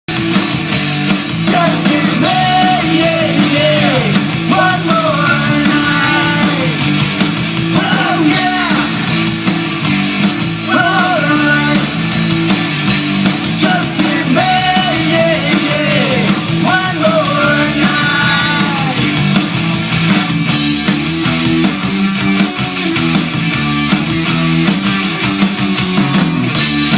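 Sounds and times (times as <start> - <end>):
rock band playing: 0.1 - 26.9.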